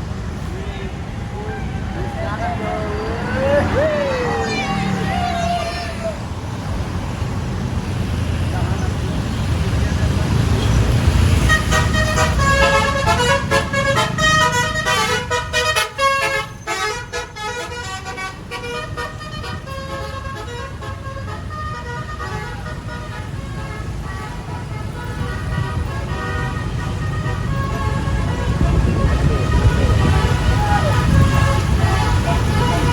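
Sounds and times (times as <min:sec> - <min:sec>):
bus horn playing tune: 0:11.4 - 0:32.9.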